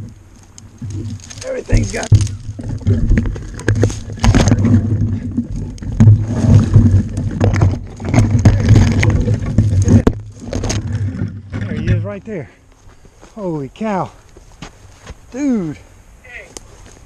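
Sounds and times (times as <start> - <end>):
microphone handling noise: 0.0 - 12.2
branches scraping and snapping: 0.0 - 13.6, 14.2 - 15.8, 16.5 - 17.0.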